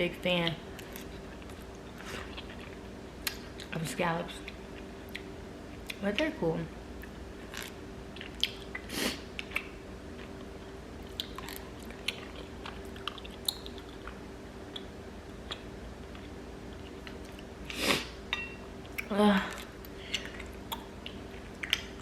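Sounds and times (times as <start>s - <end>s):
person chewing food: 0.7s - 3.7s, 4.4s - 6.0s, 7.0s - 18.0s, 18.8s - 22.0s.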